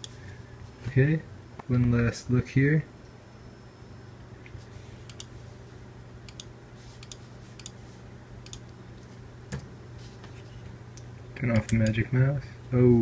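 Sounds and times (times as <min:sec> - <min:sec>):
steady low hum: 0:00.0 - 0:13.0
computer mouse clicking: 0:05.1 - 0:05.3, 0:06.3 - 0:07.8, 0:08.4 - 0:08.8.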